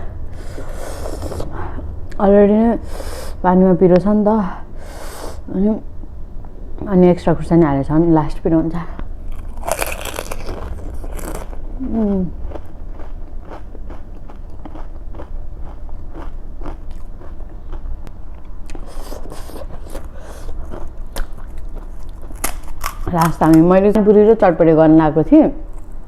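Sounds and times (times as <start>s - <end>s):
crunchy snack chewing: 9.3s - 23.3s.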